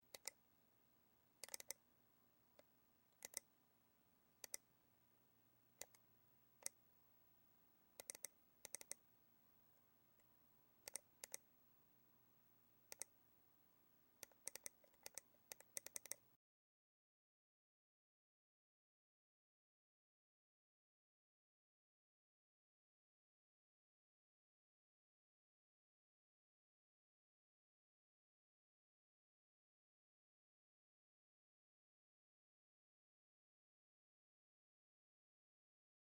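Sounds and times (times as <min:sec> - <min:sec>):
computer mouse buttons clicking: 0:00.0 - 0:00.4, 0:01.4 - 0:01.8, 0:03.2 - 0:03.5, 0:04.4 - 0:04.6, 0:05.8 - 0:06.0, 0:08.0 - 0:09.0, 0:10.2 - 0:11.4, 0:12.9 - 0:13.1, 0:14.2 - 0:16.2.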